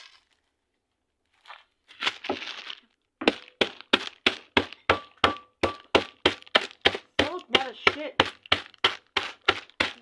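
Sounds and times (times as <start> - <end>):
crinkling tearing rustle: 1.2 - 3.1
sharp knocks with ringing tone: 4.9 - 6.2.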